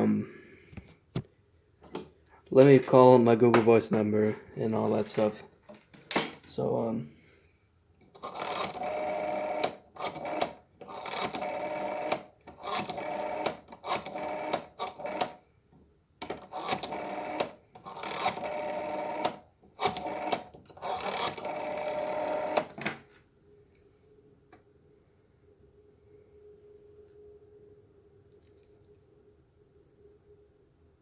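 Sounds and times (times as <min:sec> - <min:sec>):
rotary phone dial whirring: 0:08.0 - 0:15.5, 0:16.2 - 0:23.0
dial pulse clicks: 0:16.5 - 0:22.8.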